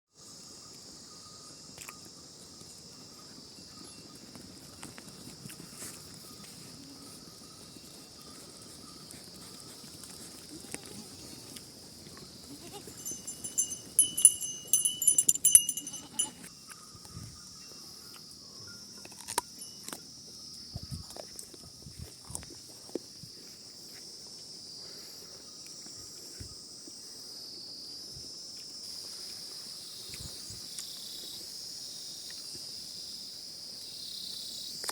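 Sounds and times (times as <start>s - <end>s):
insects chirring: 0.2s - 34.9s
high jingling: 3.5s - 4.8s, 12.5s - 16.6s, 18.6s - 20.2s
goats bleating: 12.4s - 13.2s.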